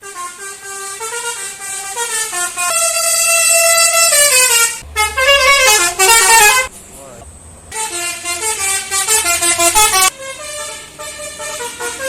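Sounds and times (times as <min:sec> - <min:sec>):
musical air horn playing a tune: 0:00.0 - 0:06.7, 0:07.7 - 0:12.0.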